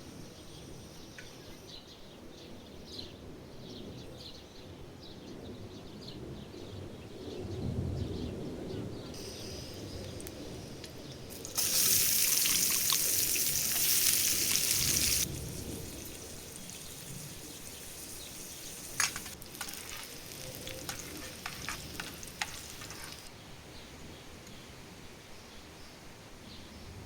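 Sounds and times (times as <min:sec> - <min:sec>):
food sizzling in hot oil: 0:09.2 - 0:23.3
utensil clicking against pan: 0:18.8 - 0:23.2.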